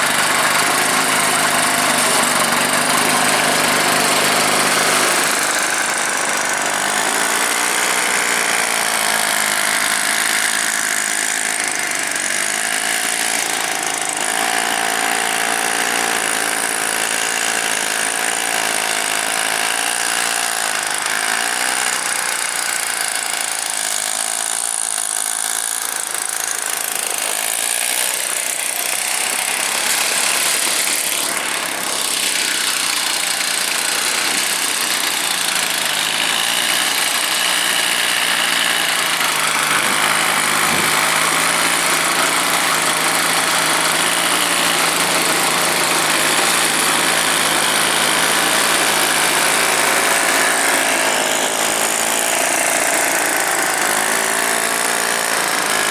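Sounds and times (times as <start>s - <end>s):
two-stroke chainsaw engine running: 0.0s - 55.9s.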